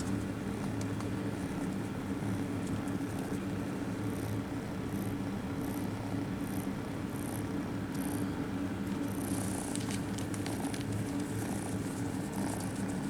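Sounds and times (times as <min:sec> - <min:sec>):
kittens purring: 0:00.0 - 0:13.0
scratchy rustles: 0:09.3 - 0:13.0.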